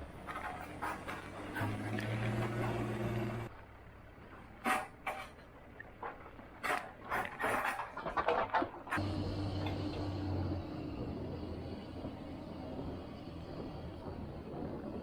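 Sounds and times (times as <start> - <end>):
skid steer engine running: 0.0 - 3.6, 8.9 - 15.0.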